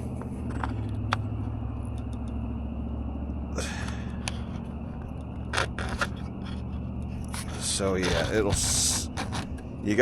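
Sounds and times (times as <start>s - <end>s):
low motor hum: 0.0s - 10.0s.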